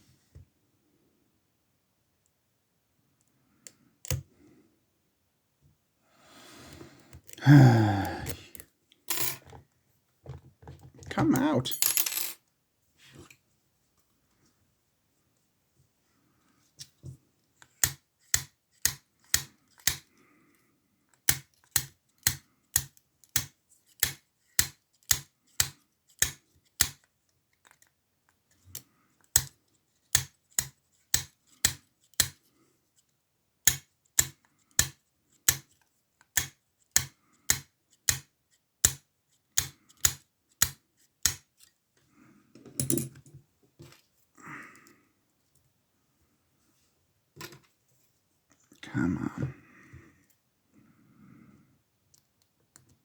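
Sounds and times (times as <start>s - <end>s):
lock pick clicking on pins: 17.8s - 20.1s, 21.2s - 27.8s, 28.7s - 32.4s, 36.3s - 39.0s, 39.6s - 41.4s.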